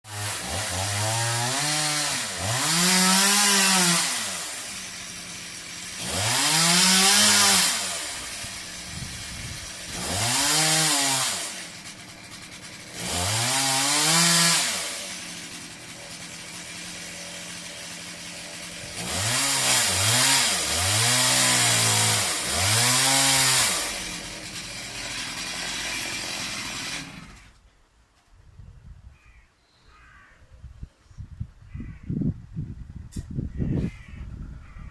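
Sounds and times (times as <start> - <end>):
chainsaw cutting a tree trunk: 0.1 - 27.6.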